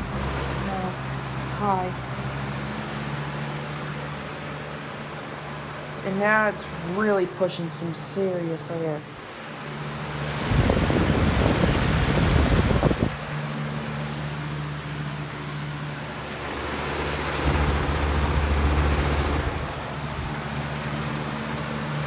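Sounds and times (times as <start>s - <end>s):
box fan running: 0.0s - 22.0s
wind buffeting microphone: 10.3s - 13.3s.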